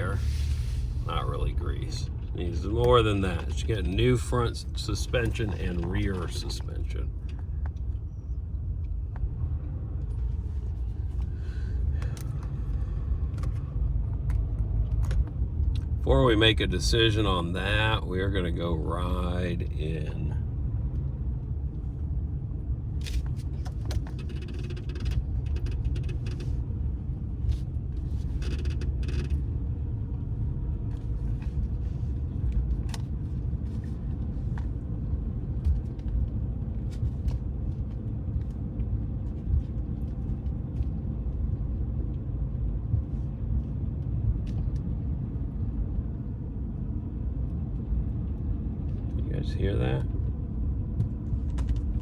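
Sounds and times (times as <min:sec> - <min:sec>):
engine and road noise: 0:00.0 - 0:52.0
cabin clicks and creaks: 0:23.0 - 0:26.6, 0:28.2 - 0:29.4.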